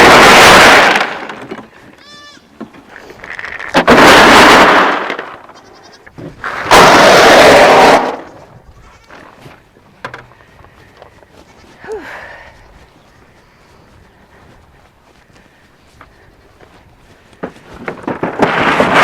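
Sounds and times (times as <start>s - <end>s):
goats bleating loudly: 1.7s - 2.6s, 5.4s - 6.2s, 8.6s - 9.4s.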